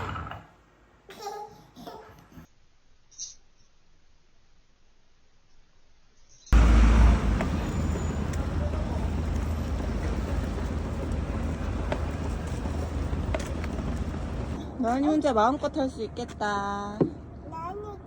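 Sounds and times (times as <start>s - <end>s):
deep low rumble: 6.6s - 14.8s.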